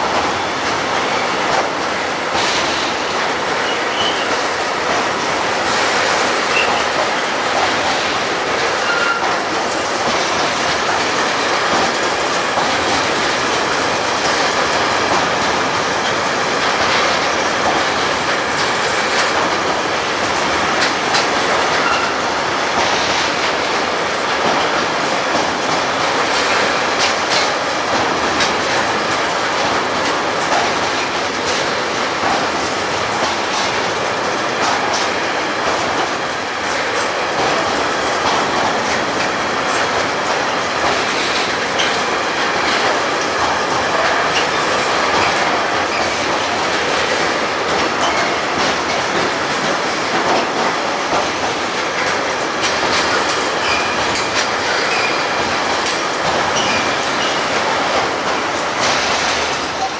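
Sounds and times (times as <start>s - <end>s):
train wheels clacking over rail joints: 0.0s - 59.9s
wheel squeal: 3.6s - 4.6s, 6.4s - 7.0s, 8.8s - 9.4s.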